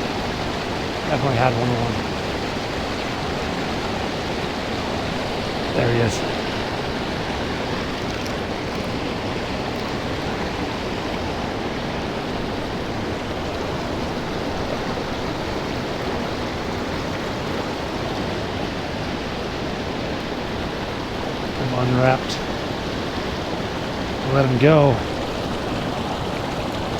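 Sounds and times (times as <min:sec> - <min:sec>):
creek water flowing: 0:00.0 - 0:26.9.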